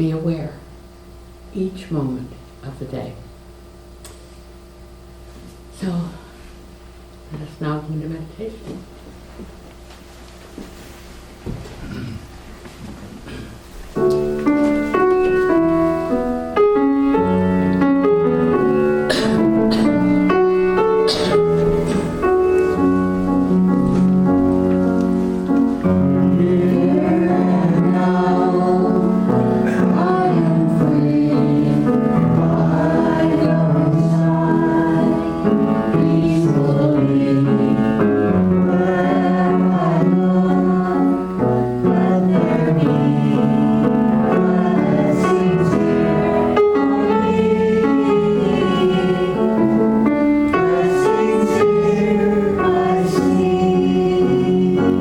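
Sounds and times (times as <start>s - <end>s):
piano accompaniment: 13.2s - 55.0s
people singing: 25.9s - 55.0s.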